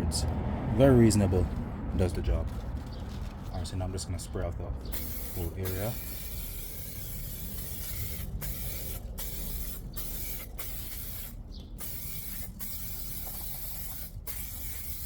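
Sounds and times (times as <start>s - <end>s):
aerosol can spraying: 4.9s - 15.0s.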